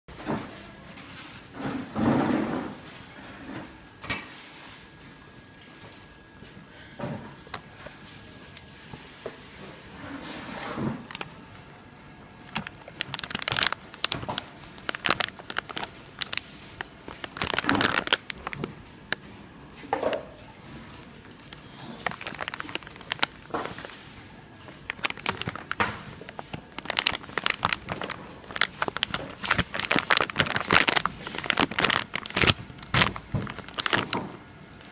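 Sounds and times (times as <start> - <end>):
plastic wrapping crinkling: 10.4 - 11.4, 12.2 - 34.9.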